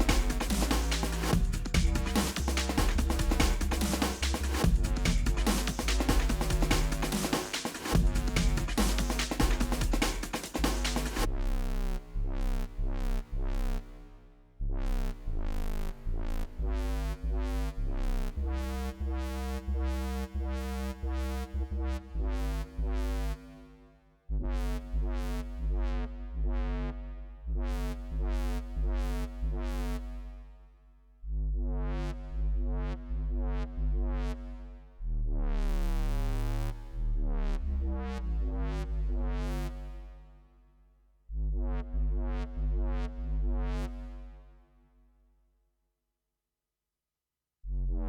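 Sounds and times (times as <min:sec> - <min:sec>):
electronic synth music: 0:00.0 - 0:14.0.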